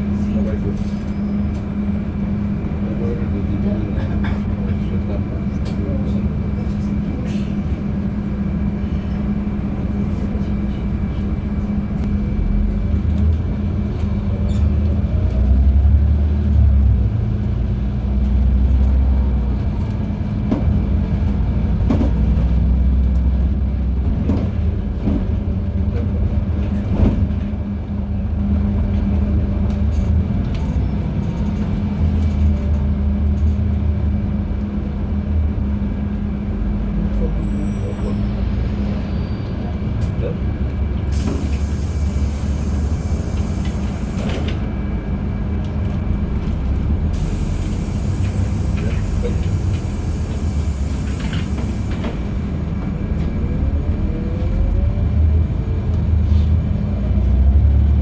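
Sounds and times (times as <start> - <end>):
bus engine and road rumble: 0.0 - 58.0.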